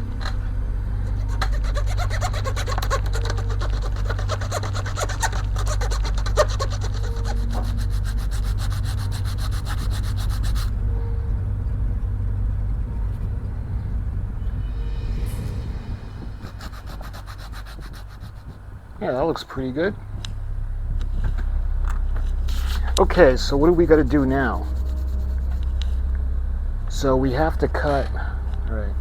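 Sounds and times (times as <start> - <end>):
hand saw cutting wood: 1.0 - 10.7, 16.4 - 18.5.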